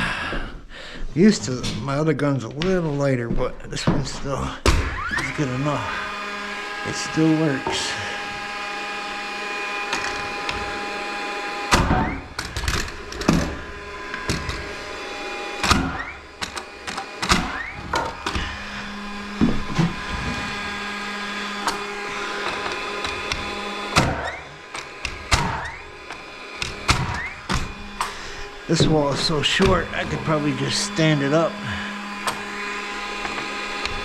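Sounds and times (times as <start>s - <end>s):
air compressor humming: 0.0s - 34.0s
nail gun firing: 15.6s - 18.4s, 21.6s - 28.2s.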